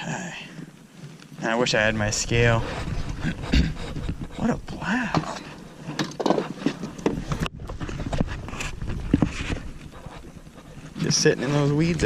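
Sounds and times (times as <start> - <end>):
breathy sounds: 2.4 - 6.0.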